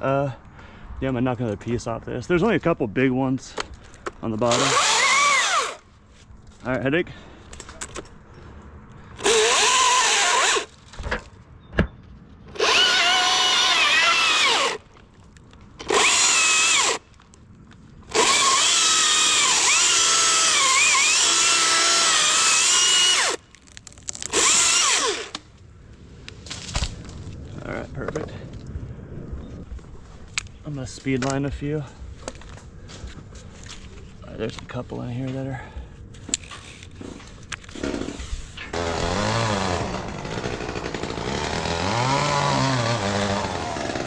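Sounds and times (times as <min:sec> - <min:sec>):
chainsaw cutting wood: 0:04.5 - 0:05.8, 0:09.2 - 0:10.7, 0:12.5 - 0:14.9, 0:15.8 - 0:17.0, 0:18.1 - 0:23.4, 0:24.2 - 0:25.4, 0:37.7 - 0:44.0.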